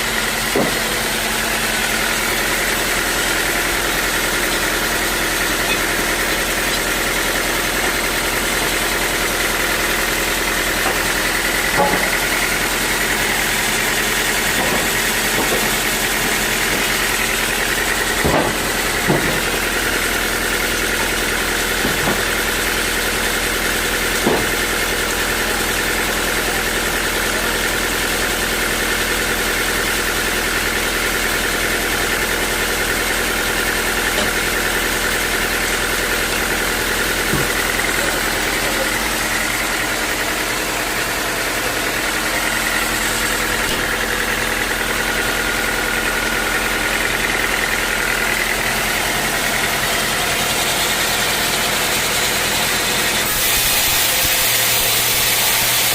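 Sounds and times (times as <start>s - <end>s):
sawmill machinery running: 0.0s - 55.9s
mechanical knock: 11.8s - 12.2s, 14.5s - 16.9s.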